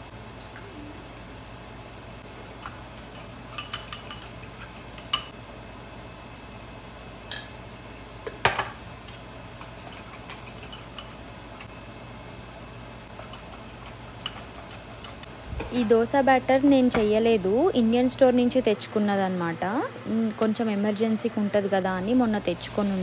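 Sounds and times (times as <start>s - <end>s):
low steady hum: 0.0s - 23.0s
kitchenware clinking and knocking: 8.3s - 8.8s.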